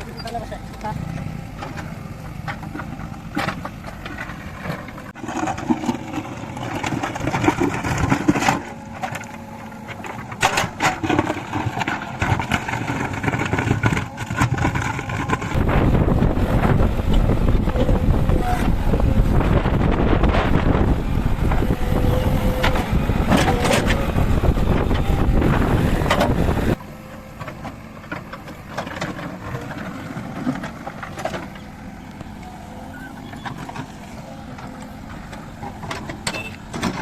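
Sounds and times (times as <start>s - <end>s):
diesel engine running: 0.0s - 37.0s
deep loud rumble: 11.0s - 26.8s.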